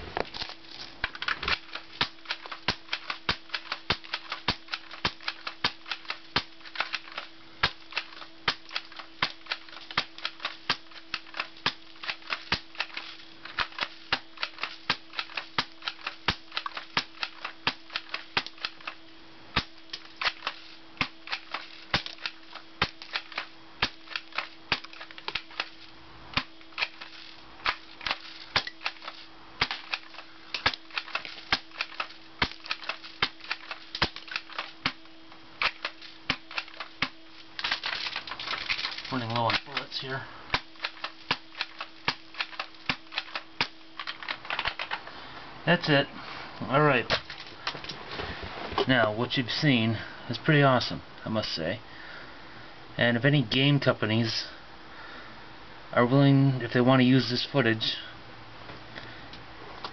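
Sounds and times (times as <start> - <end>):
airsoft gun clacks: 0.0 - 19.0, 19.6 - 45.1
low hum: 0.0 - 50.2.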